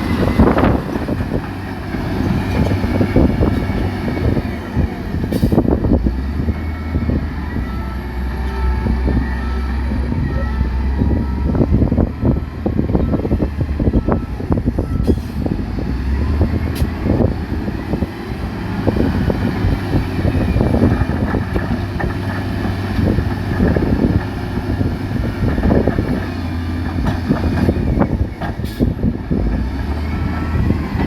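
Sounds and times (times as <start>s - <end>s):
diesel engine rumbling: 0.0s - 31.0s
knocks and clatter: 25.5s - 30.0s.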